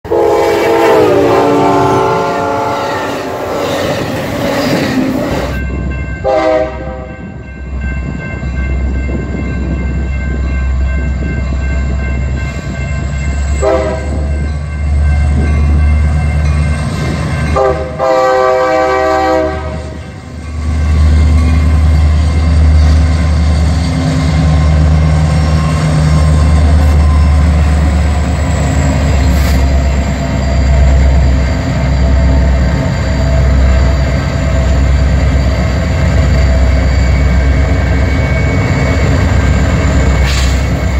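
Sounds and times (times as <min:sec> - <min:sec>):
train horn blasts: 0:00.0 - 0:03.6, 0:06.2 - 0:07.3, 0:13.6 - 0:14.3, 0:17.5 - 0:20.2
freight train rumbling past: 0:00.0 - 0:40.9.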